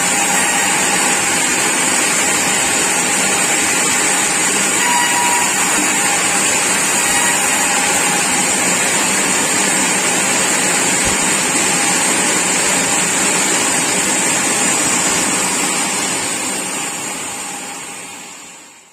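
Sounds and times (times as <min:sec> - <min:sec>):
sawmill machinery droning: 0:00.0 - 0:18.9.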